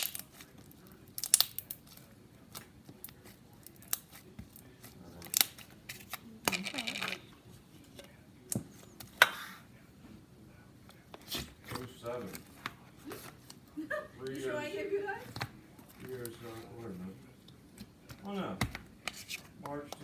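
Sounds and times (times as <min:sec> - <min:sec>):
slime clicking and popping: 0:01.1 - 0:02.0.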